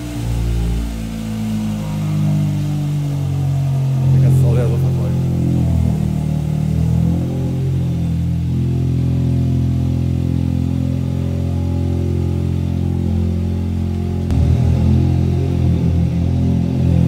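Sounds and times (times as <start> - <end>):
car engine running: 0.0 - 17.0.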